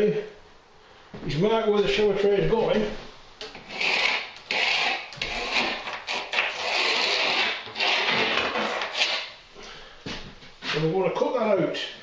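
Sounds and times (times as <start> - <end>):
marking tool scratching plasterboard: 3.5 - 9.3.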